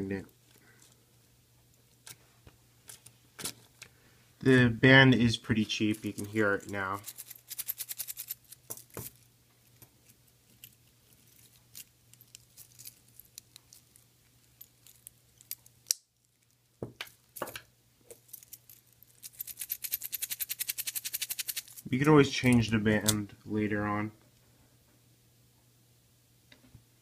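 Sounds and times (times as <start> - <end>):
metal watch band rattling: 5.9 - 9.2, 10.5 - 16.6, 18.1 - 21.9.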